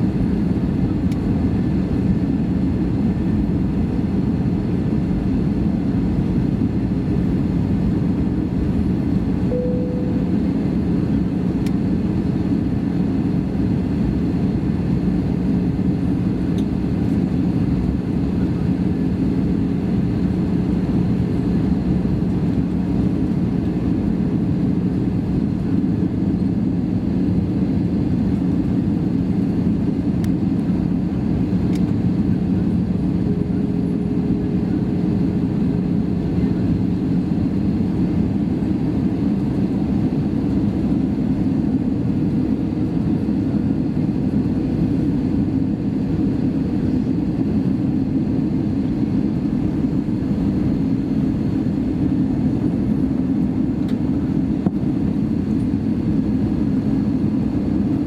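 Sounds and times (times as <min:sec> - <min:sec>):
airplane cabin engine hum: 0:00.0 - 0:58.0
brief tone: 0:09.5 - 0:10.7.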